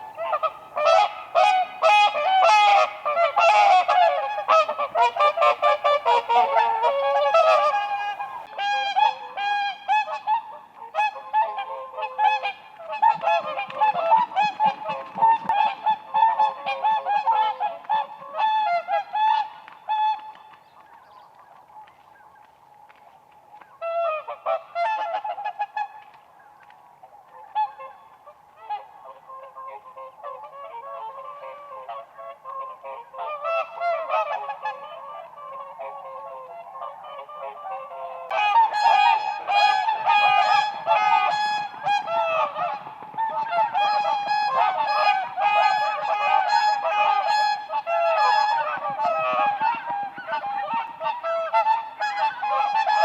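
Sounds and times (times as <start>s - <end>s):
swans honking: 0.0s - 8.5s, 38.3s - 49.6s.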